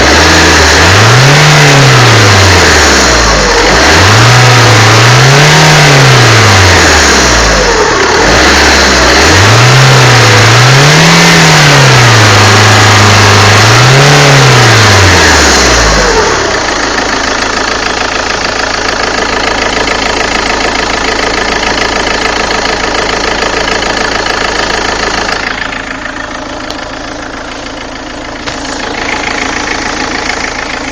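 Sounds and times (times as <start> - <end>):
diesel engine revving: 0.0 - 30.9.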